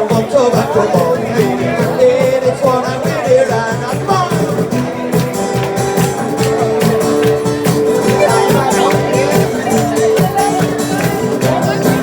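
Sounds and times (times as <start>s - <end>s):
live band music: 0.0s - 12.0s
wavering melody line: 7.9s - 11.0s.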